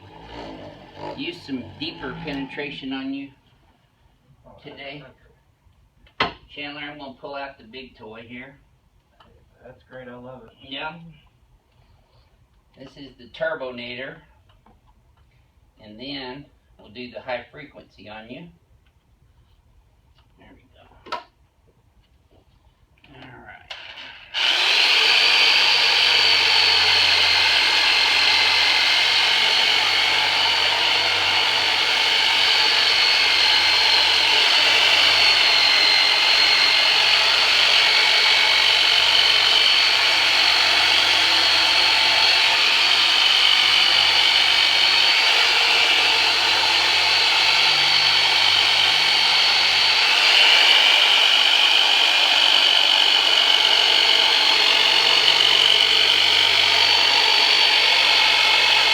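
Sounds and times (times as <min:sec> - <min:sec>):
massage tool motor whining: 0:00.0 - 0:03.1, 0:23.7 - 0:58.9.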